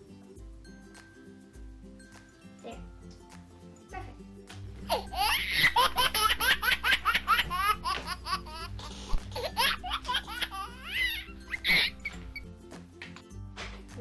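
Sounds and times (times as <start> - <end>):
background music: 0.0 - 14.0
high-pitched giggling: 4.9 - 12.2.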